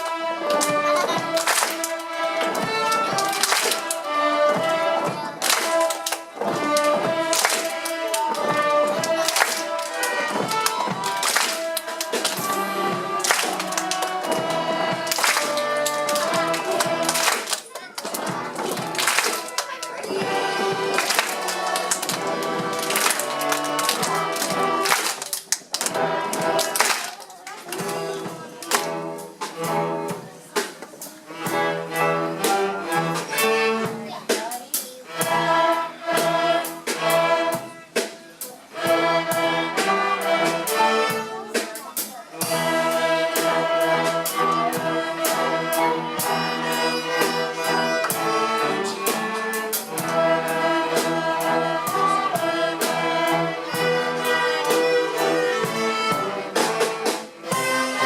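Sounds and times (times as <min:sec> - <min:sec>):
string ensemble playing: 0:00.0 - 0:58.0.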